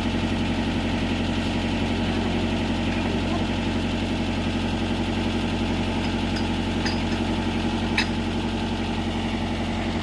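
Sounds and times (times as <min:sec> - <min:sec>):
excavator diesel engine idling: 0:00.0 - 0:10.0.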